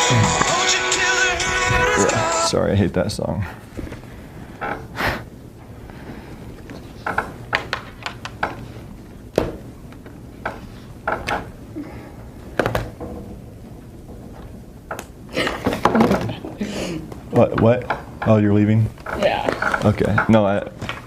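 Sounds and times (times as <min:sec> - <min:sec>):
knocks and clicks of objects handled: 0:06.6 - 0:11.6, 0:12.5 - 0:16.4, 0:17.1 - 0:21.0.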